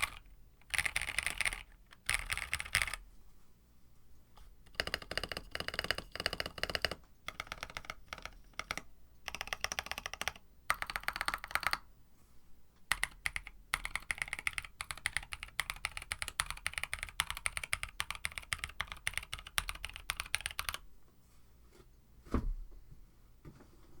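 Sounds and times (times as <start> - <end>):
fast typing on mechanical keyboard: 0.0 - 3.0, 4.7 - 11.8, 12.9 - 20.8.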